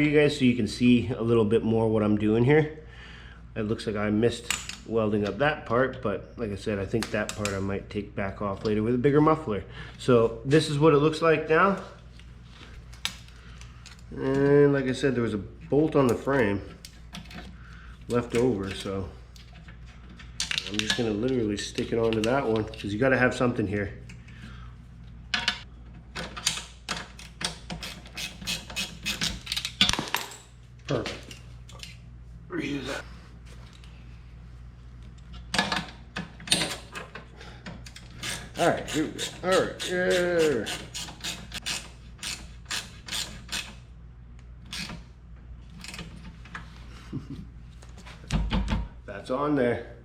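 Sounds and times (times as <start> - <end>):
ratchet wrench clicking: 38.2 - 43.7.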